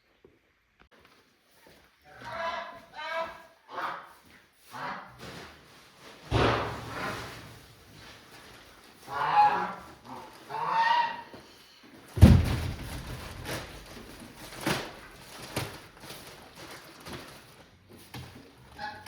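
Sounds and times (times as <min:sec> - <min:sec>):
heavy thump: 0:06.3 - 0:06.9, 0:12.2 - 0:13.7
shavings rustling: 0:12.2 - 0:18.7.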